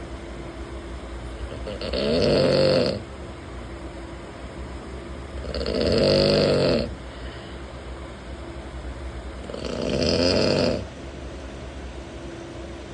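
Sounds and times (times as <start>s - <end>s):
man snoring: 1.5s - 3.0s, 5.4s - 7.0s, 9.4s - 10.9s.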